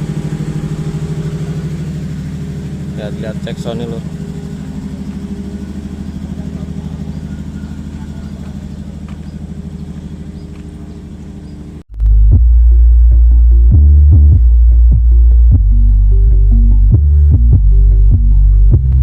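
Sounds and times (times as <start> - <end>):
engine idling: 0.0 - 19.0.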